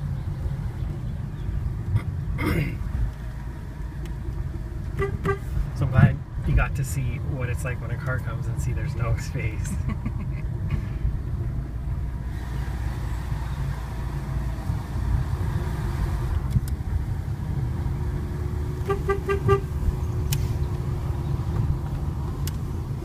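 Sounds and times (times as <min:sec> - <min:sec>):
car engine and road rumble: 0:00.0 - 0:23.0
car horn toots: 0:05.0 - 0:05.5, 0:18.8 - 0:19.7.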